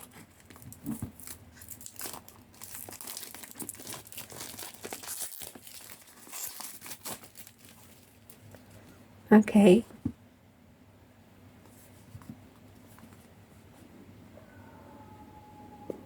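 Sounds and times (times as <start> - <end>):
wrapping crinkling and tearing: 0.0 - 8.8.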